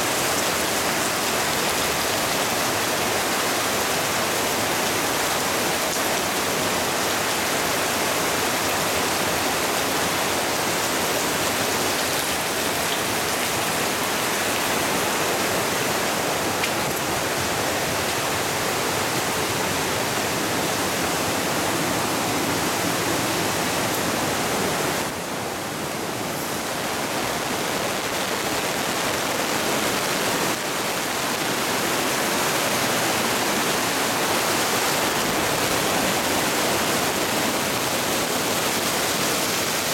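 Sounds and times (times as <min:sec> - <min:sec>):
torrential rain pouring: 0:00.0 - 0:39.9.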